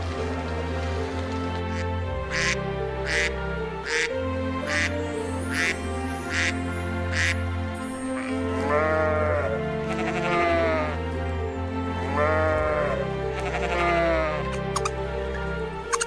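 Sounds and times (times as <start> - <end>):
background music: 0.0 - 16.0
animal bleating: 8.6 - 11.0, 12.0 - 14.9.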